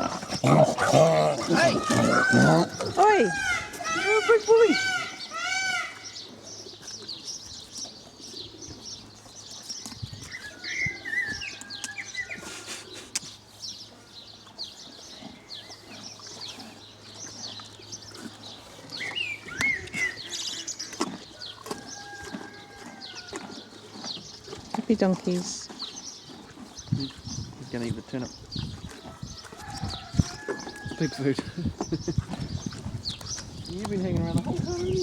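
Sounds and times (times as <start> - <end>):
small birds chirping: 0.0 - 35.0
whistled bird calls: 19.0 - 20.6.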